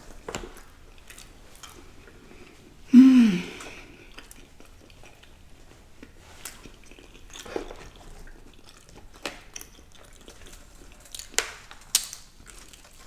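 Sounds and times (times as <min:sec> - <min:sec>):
person chewing: 0:03.0 - 0:04.5.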